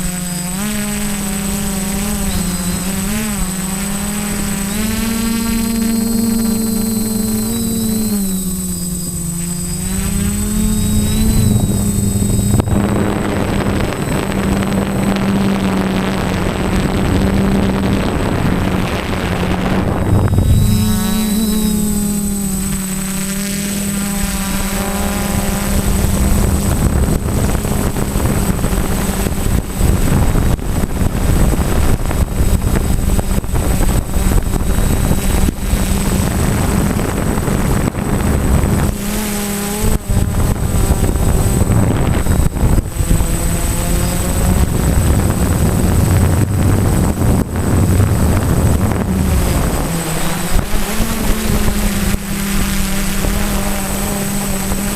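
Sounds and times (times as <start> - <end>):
quadcopter motors whining: 0.0 - 54.9
rushing noise: 8.3 - 15.1, 19.2 - 23.0.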